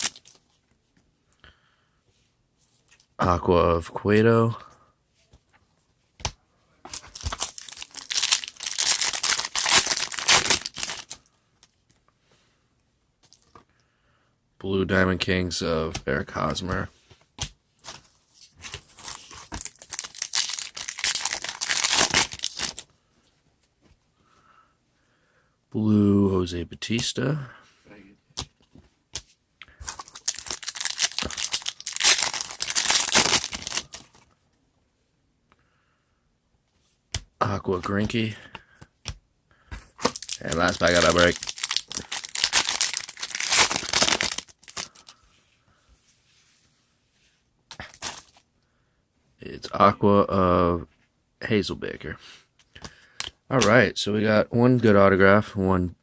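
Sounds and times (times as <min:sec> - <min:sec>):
wrapper crinkling: 0:00.0 - 0:00.4, 0:06.9 - 0:11.3, 0:19.0 - 0:22.8, 0:29.9 - 0:34.2, 0:40.0 - 0:45.1.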